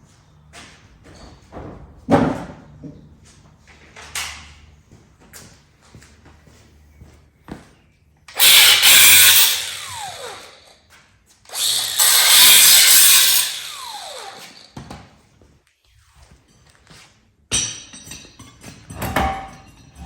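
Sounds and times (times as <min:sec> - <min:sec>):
handheld power tool whirring: 0:08.3 - 0:14.9.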